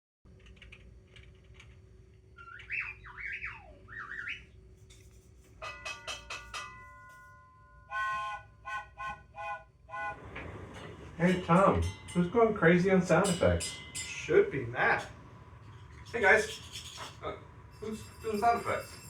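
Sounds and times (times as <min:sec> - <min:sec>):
squawking calls swooping in pitch: 0:02.4 - 0:04.6
short horn honks: 0:07.9 - 0:10.3
struck bell-like tones: 0:10.7 - 0:19.0.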